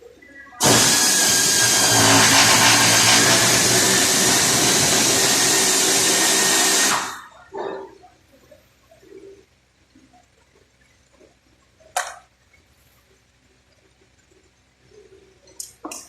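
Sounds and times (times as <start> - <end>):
power tool running with high whine: 0.6 - 7.2.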